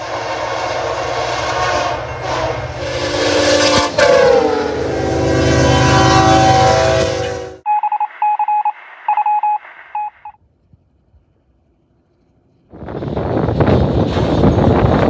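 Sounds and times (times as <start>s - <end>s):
train horn: 0.0s - 7.6s
train rumbling past: 0.0s - 7.6s, 11.3s - 15.0s.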